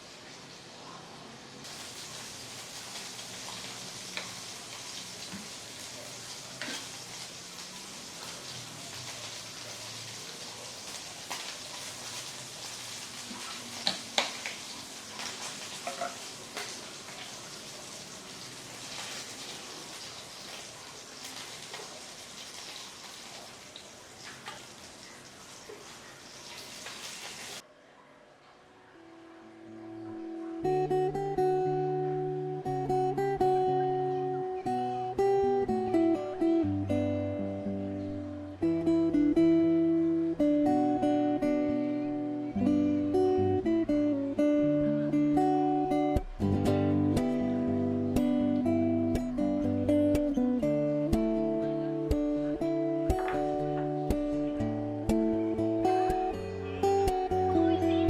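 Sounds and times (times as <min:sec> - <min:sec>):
food sizzling in hot oil: 0:01.6 - 0:27.6
oil popping and crackling: 0:01.7 - 0:27.6.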